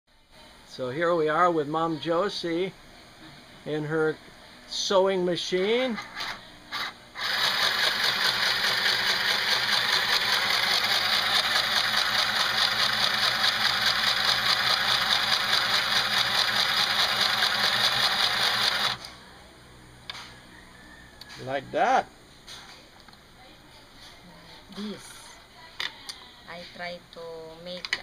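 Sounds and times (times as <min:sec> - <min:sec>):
sewing machine stitching: 0:06.1 - 0:19.1.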